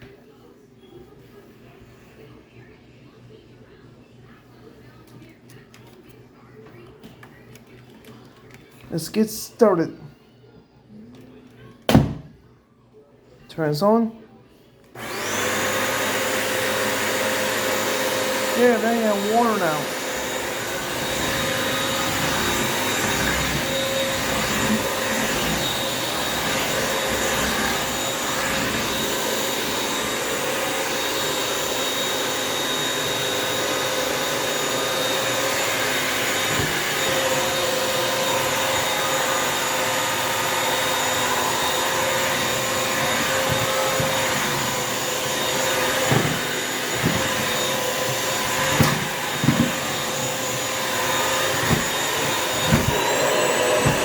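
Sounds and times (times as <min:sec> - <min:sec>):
vacuum mop motor whine: 0:15.0 - 0:54.0.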